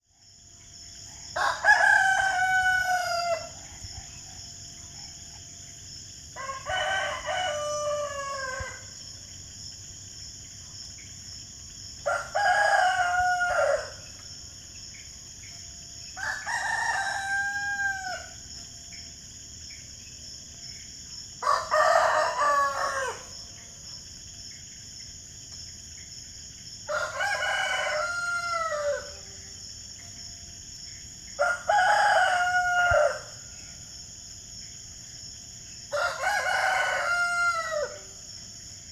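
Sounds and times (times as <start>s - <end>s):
high-pitched background hiss: 0.0s - 38.9s
rooster crowing: 1.2s - 3.9s, 6.4s - 9.1s, 12.0s - 14.1s, 16.2s - 18.5s, 21.4s - 23.6s, 26.9s - 29.6s, 31.4s - 33.4s, 35.9s - 38.3s.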